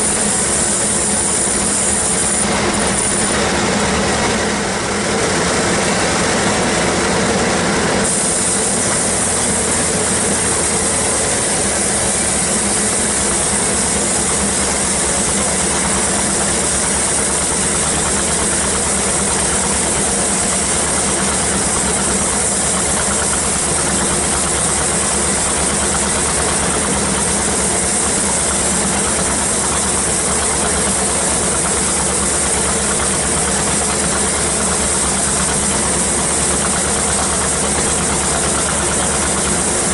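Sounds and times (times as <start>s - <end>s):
high hiss of saw cutting: 0.0s - 4.1s, 8.0s - 39.9s
band sawmill running: 0.0s - 39.9s.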